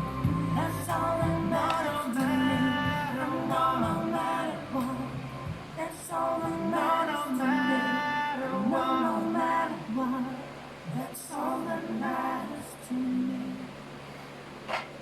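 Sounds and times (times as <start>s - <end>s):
musical accompaniment: 0.0s - 5.7s
woman singing: 0.0s - 13.8s.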